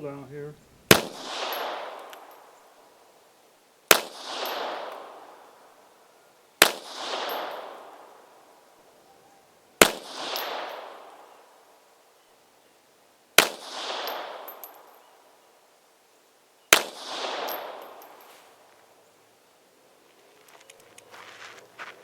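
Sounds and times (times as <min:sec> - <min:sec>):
pistol shots with rolling echo: 0:00.9 - 0:02.9, 0:03.9 - 0:05.9, 0:06.6 - 0:08.7, 0:09.8 - 0:11.8, 0:13.4 - 0:15.2, 0:16.7 - 0:18.2.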